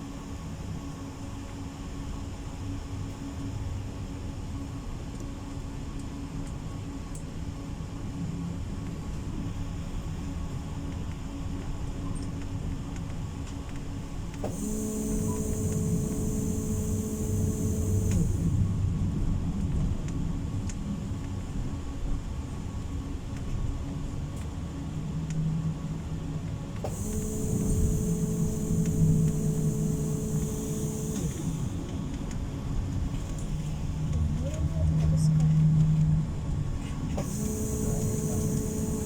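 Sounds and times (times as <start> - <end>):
tram motor whine: 7.8 - 39.0
tram rumble: 32.1 - 37.2.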